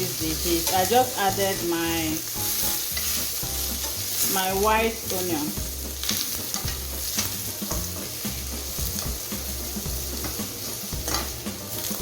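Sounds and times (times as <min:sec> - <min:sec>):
onion sizzling in a pan: 0:00.0 - 0:12.0.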